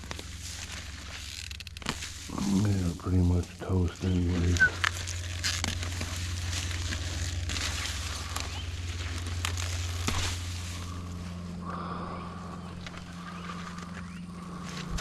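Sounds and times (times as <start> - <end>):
plants rustling: 0.0 - 15.0
steady low hum: 0.0 - 15.0
man breathing hard: 10.7 - 15.0.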